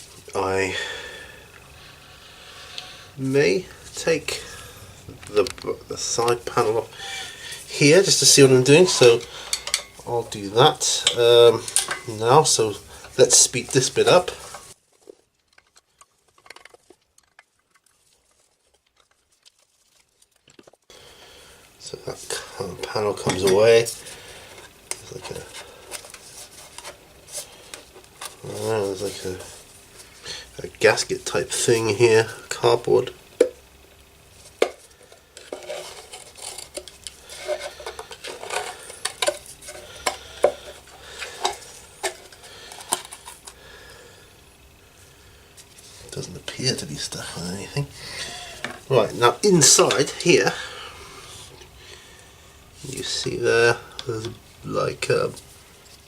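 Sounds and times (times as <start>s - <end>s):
metal parts clinking and knocking: 10.8s - 12.6s.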